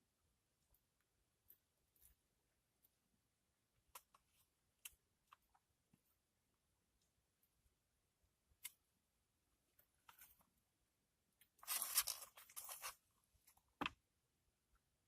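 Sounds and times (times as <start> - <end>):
plastic packaging crinkling: 11.6 - 13.0.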